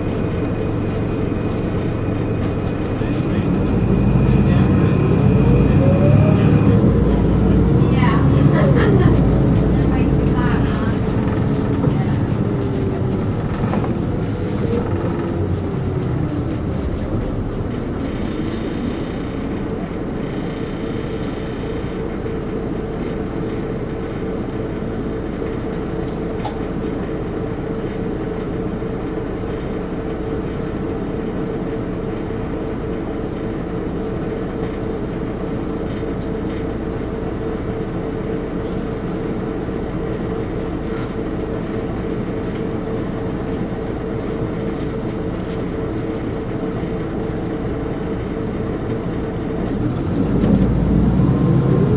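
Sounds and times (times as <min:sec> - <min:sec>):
gearbox whine: 0:00.0 - 0:22.4
bus engine rumbling drone: 0:00.0 - 0:51.9
faint high whistling tones: 0:03.3 - 0:06.8.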